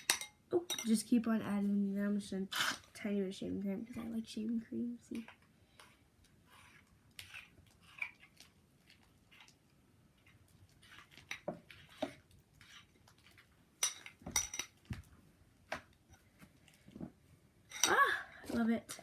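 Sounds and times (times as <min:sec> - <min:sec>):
spoon stirring slime: 0:05.2 - 0:15.1.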